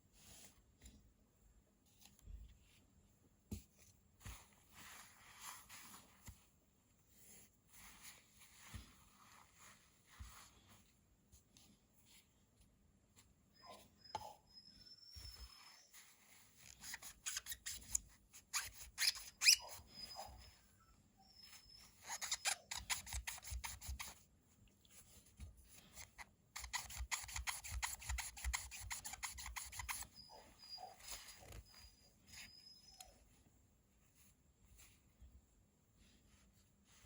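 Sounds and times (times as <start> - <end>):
rubbing strokes polishing metal: 26.6 - 30.1.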